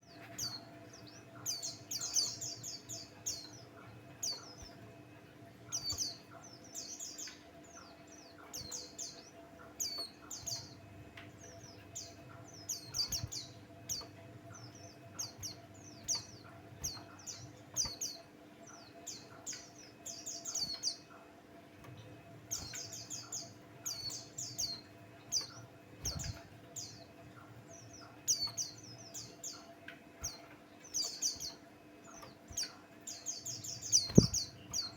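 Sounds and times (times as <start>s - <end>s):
faint steady hum: 0.0s - 34.9s
bird singing high fast chirps: 33.3s - 34.9s.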